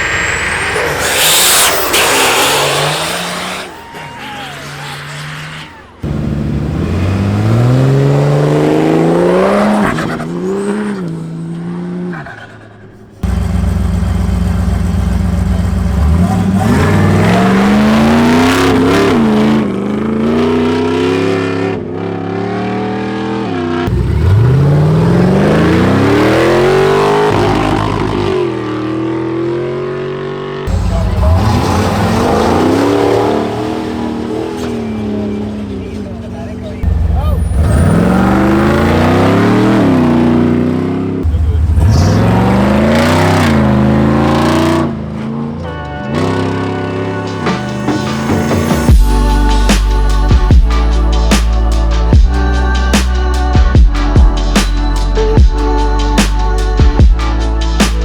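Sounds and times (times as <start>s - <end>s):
engine revving hard: 0.0s - 3.8s, 4.6s - 10.6s, 13.2s - 29.8s, 30.6s - 45.6s.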